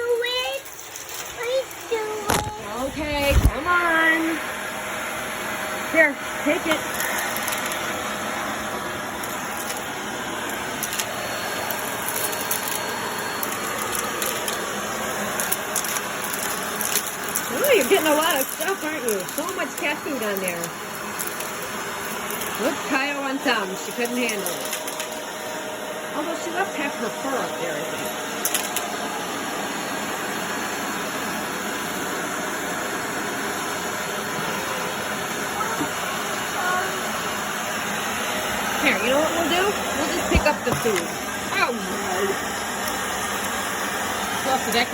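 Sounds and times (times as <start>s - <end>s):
vacuum cleaner running: 0.0s - 44.9s
debris clicking in vacuum: 6.6s - 8.0s, 9.2s - 23.0s, 23.8s - 25.3s, 28.0s - 28.9s, 39.7s - 41.5s.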